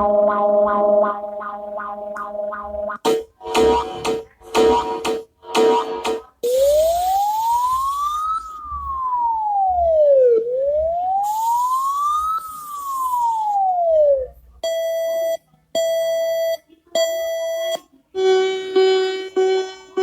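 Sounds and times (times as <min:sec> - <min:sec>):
siren wailing: 0:06.5 - 0:14.3.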